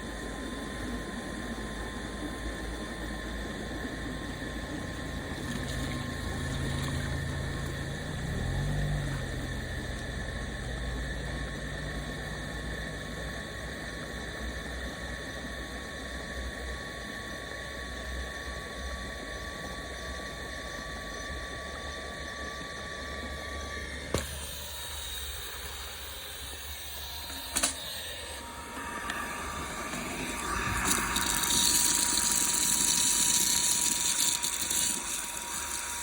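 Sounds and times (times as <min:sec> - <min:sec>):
vacuum cleaner motor running: 0:00.0 - 0:36.0
sharp click: 0:27.3 - 0:27.9.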